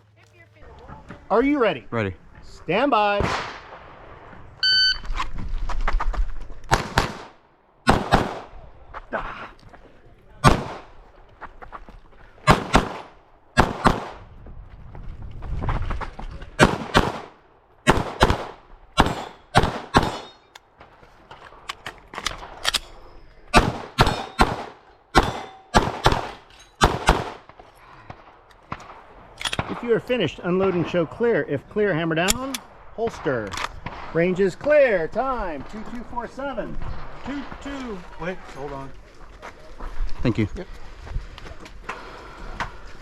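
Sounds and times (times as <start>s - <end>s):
shot timer beep: 4.6s - 5.0s
pistol shots: 6.7s - 8.5s, 10.4s - 11.0s, 12.5s - 14.2s, 16.6s - 20.5s, 23.5s - 27.6s.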